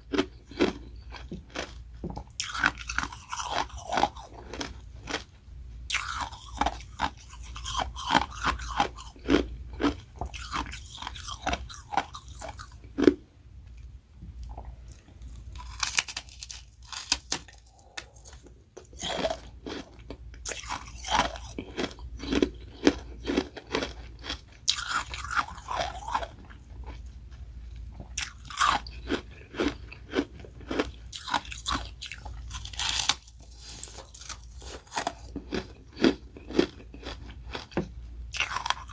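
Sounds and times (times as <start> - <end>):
ice crunching between teeth: 5.9 - 13.2, 15.5 - 26.3, 28.2 - 37.7, 38.3 - 38.9.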